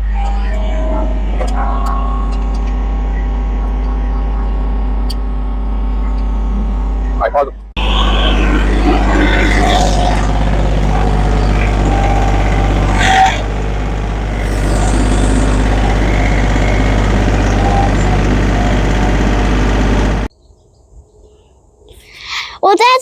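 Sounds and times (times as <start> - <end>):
tractor engine running: 7.8 - 20.3.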